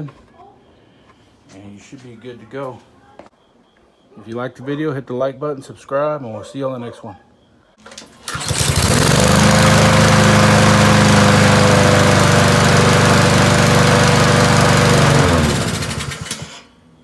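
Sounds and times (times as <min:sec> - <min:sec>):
lawn mower engine running: 0:07.9 - 0:16.6.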